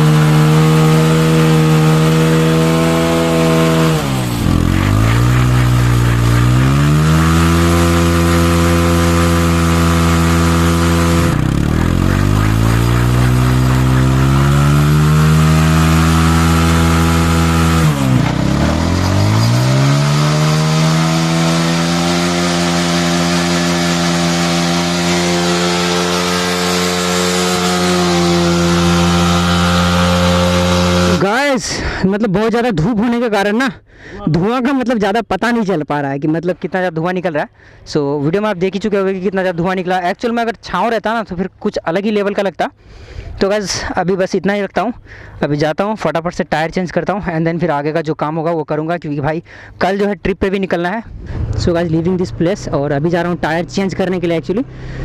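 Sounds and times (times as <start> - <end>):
tyre spinning on road: 0.0 - 31.2
motorcycle engine revving high: 0.0 - 31.4, 51.1 - 55.0.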